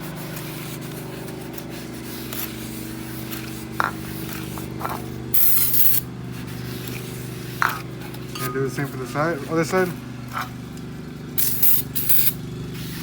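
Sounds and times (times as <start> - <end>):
aerosol spray hiss: 5.4 - 6.0, 11.4 - 13.0.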